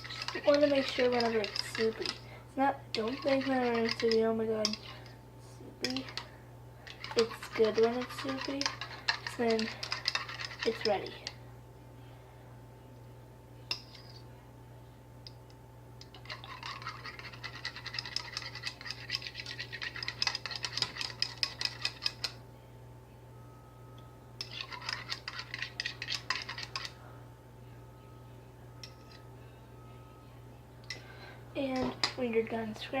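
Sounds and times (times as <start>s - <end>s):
fork whisking eggs in bowl: 0.0s - 5.2s, 5.8s - 11.4s, 16.0s - 22.4s, 24.4s - 27.0s.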